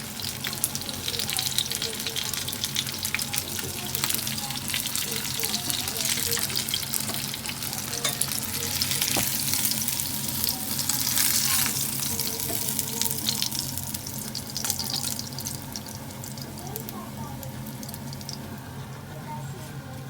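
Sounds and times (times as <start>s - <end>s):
chicken deep-frying in oil: 0.0s - 19.4s.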